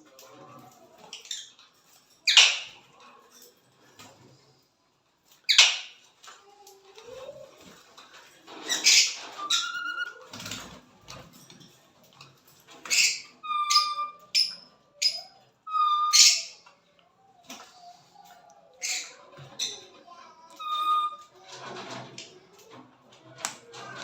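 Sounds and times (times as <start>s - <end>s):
parrots screeching and chirping: 2.2s - 2.8s, 5.5s - 6.0s, 8.5s - 10.6s, 12.7s - 16.7s, 18.8s - 19.8s, 20.5s - 21.9s.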